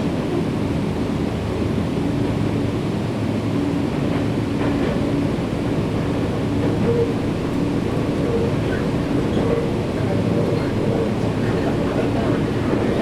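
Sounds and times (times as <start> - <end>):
train wheels rolling on rails: 3.9 - 13.0.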